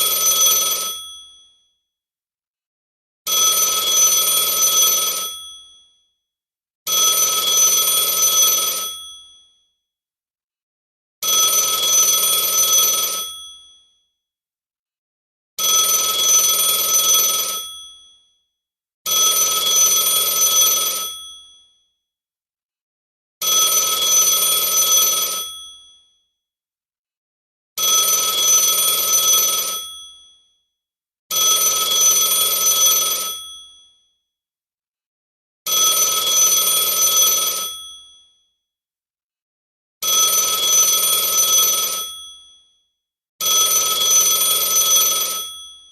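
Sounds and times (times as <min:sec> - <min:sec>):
telephone ringing: 0:00.0 - 0:01.1, 0:28.0 - 0:30.0, 0:35.7 - 0:38.0, 0:40.2 - 0:42.4, 0:43.7 - 0:45.8.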